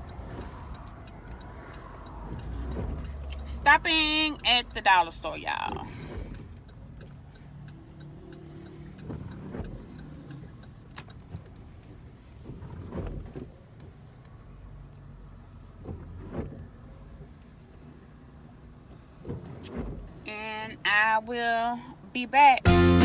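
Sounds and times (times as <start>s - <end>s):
faint regular ticking: 0.0s - 12.1s
car engine and road rumble: 0.0s - 23.0s.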